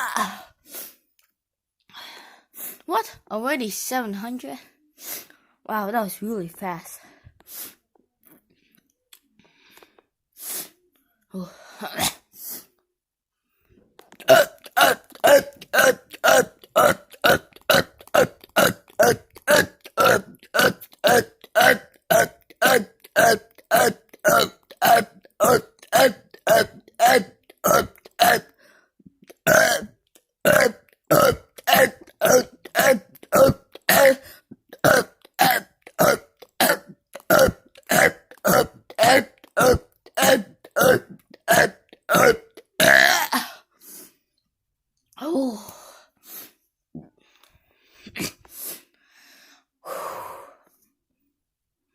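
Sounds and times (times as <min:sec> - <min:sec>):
person burping: 0:00.0 - 0:00.4, 0:14.0 - 0:28.6, 0:29.2 - 0:43.6.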